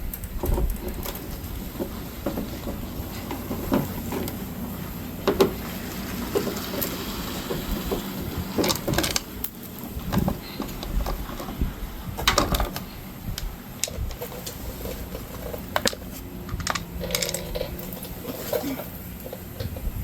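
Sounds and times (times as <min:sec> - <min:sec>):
tools clicking and knocking: 0:12.2 - 0:19.9.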